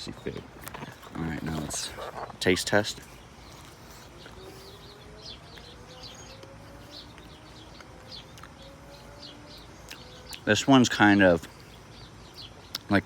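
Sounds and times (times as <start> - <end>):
small birds chirping: 0.0 - 13.0
faint low hum rising in pitch: 2.7 - 12.8.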